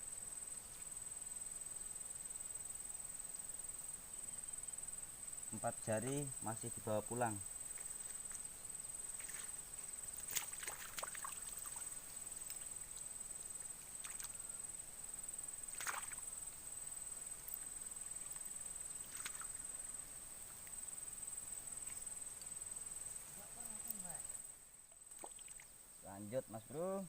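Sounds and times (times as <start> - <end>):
insects chirring: 0.0 - 27.0
brief splashes or knocks: 10.2 - 11.9, 15.7 - 16.2, 19.1 - 19.6.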